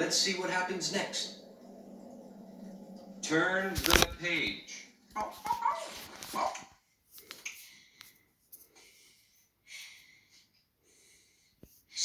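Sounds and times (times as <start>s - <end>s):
cartoon puppy barking: 5.2s - 6.7s.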